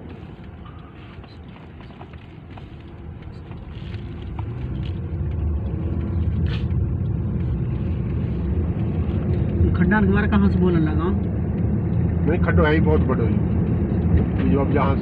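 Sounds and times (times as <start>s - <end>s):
car rumbling over potholes: 0.0s - 15.0s.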